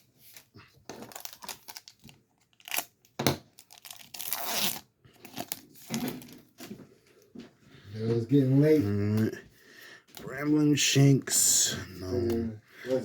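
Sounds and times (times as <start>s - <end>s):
foil pack crinkling: 0.2s - 6.6s
foil pack tearing: 3.5s - 6.2s.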